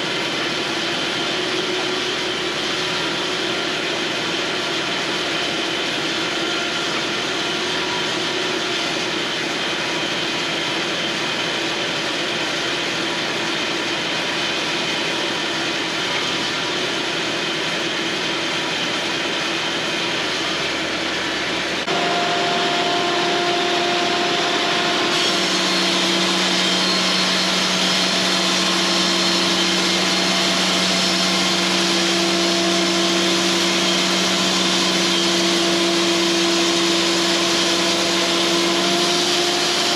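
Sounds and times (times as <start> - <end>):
steady whining tones: 0.0 - 10.3, 18.2 - 39.9
band sawmill sawing wood: 15.8 - 39.9.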